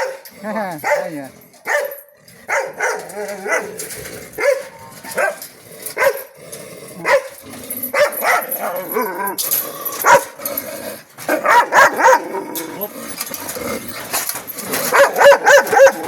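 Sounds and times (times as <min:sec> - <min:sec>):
dog barking: 0:00.0 - 0:03.8, 0:04.4 - 0:05.4, 0:06.0 - 0:06.3, 0:07.0 - 0:09.2, 0:10.0 - 0:10.4, 0:11.3 - 0:12.3, 0:14.9 - 0:16.0.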